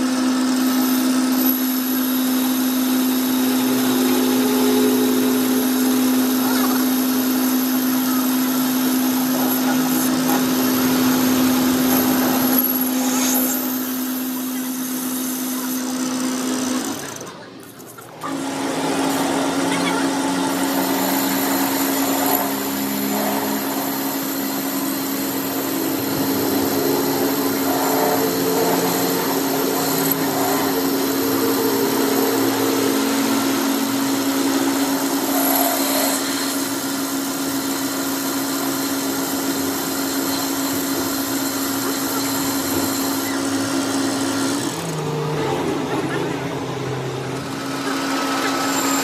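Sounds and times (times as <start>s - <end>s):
machine motor hum: 0.0s - 49.0s
noisy mechanical sound: 0.0s - 49.0s.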